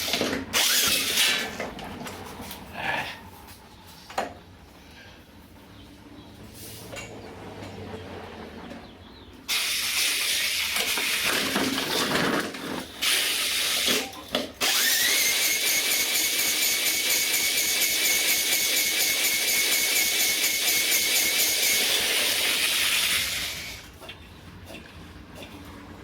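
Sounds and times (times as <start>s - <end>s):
engine started with electric drill: 0.0s - 2.1s, 6.9s - 23.9s.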